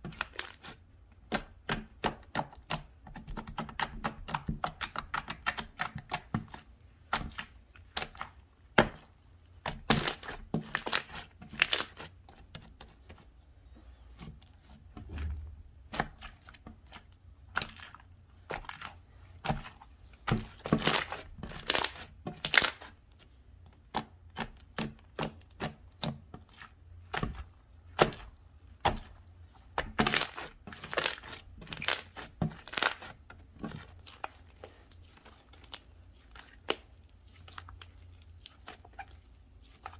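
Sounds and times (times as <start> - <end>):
slime crackling and popping: 29.8 - 34.4.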